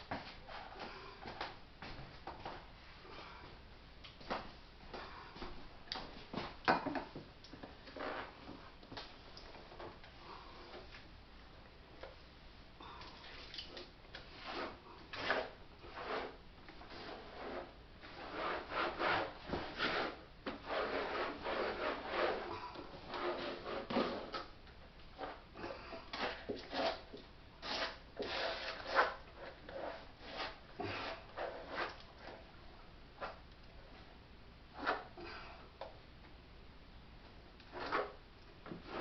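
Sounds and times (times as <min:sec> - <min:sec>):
hand scraping freezer: 0:14.2 - 0:24.5, 0:25.2 - 0:32.4.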